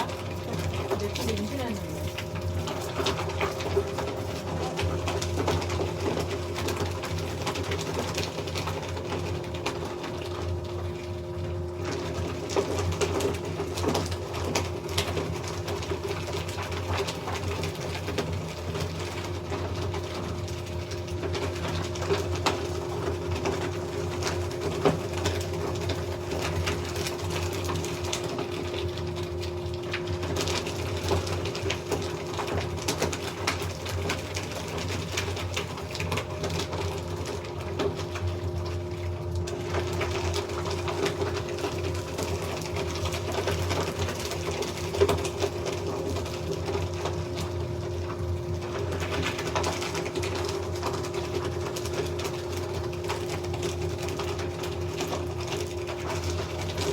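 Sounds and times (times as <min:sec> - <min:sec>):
paper shredder running: 0:00.0 - 0:56.9.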